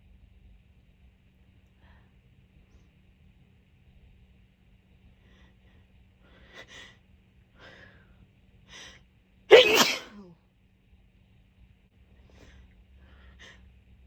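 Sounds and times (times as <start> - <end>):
person sneezing: 9.5 - 10.3.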